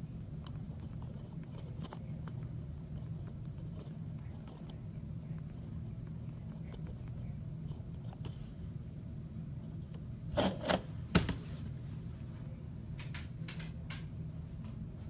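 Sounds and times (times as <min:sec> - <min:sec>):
steady low hum: 0:00.0 - 0:15.0
sharp clicks and taps: 0:13.0 - 0:14.1.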